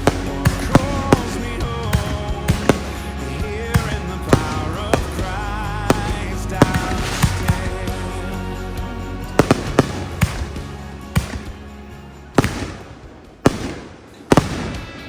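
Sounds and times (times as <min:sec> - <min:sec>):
fireworks bangs: 0:00.0 - 0:08.4, 0:09.3 - 0:11.7, 0:12.4 - 0:15.0.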